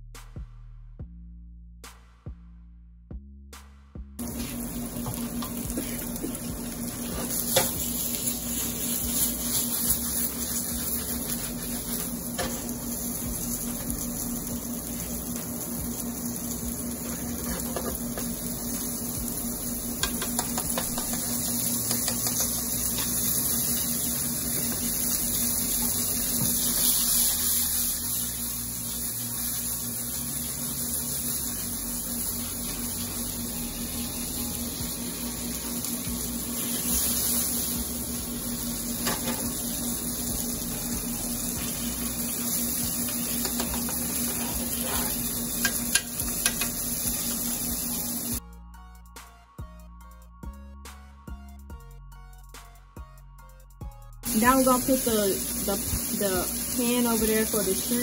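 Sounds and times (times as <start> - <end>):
chicken sizzling in frying pan: 4.2 - 48.4, 54.2 - 58.0
utensils clicking against pan: 20.0 - 23.8, 43.0 - 46.8.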